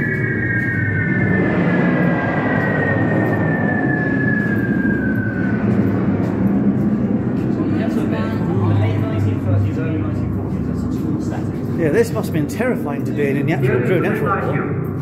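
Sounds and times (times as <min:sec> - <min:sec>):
descending whistle tone: 0:00.0 - 0:08.6
aircraft drone overhead: 0:00.0 - 0:15.0.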